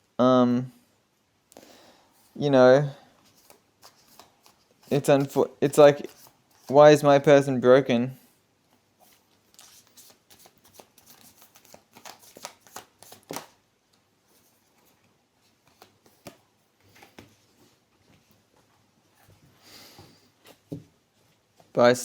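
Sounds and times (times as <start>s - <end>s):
cards rustling: 3.2s - 7.1s, 9.0s - 13.6s, 14.3s - 17.6s
cards shuffling clicks: 9.5s - 13.6s.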